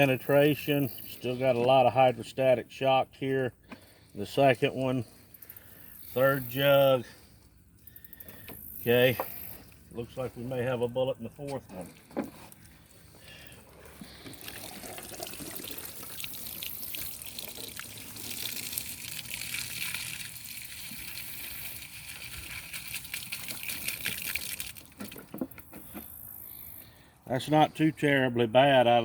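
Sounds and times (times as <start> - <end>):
water pouring from plastic jug: 11.7 - 25.6.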